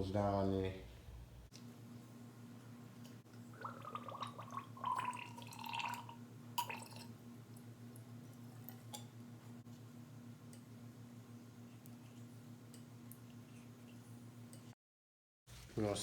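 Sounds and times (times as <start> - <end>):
oil gurgling in a fork: 3.4 - 9.1.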